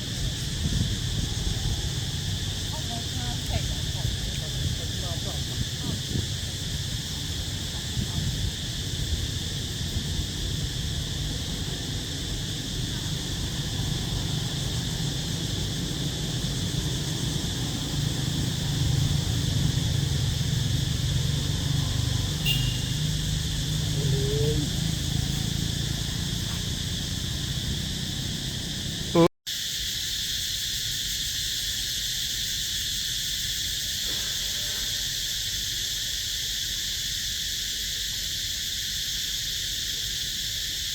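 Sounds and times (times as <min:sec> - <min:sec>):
insects chirring: 0:00.0 - 0:40.9.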